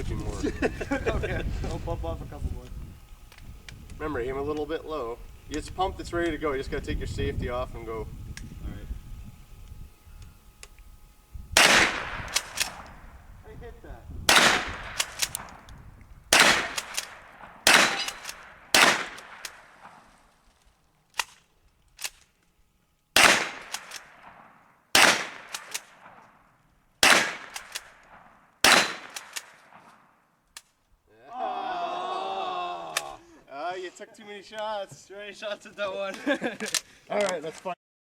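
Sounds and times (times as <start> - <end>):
rifle shots with echo: 11.6 - 12.8, 14.3 - 15.5, 16.3 - 20.1, 23.2 - 26.3, 27.0 - 30.0.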